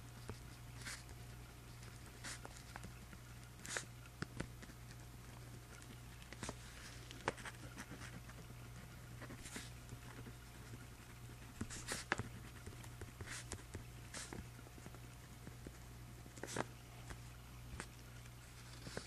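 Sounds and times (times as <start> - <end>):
low steady hum: 0.0 - 19.0
pen scratching on paper: 0.2 - 2.8, 7.3 - 14.4.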